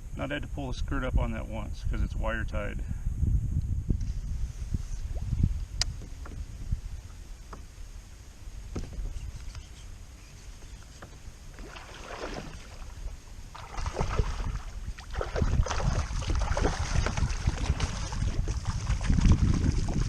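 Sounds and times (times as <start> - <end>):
wind on microphone: 0.0 - 20.0
water splashing around kayak: 5.0 - 20.0.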